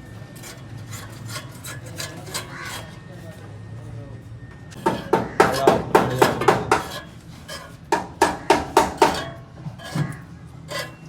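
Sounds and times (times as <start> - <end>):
hammer striking metal: 4.8 - 7.0, 7.9 - 9.4.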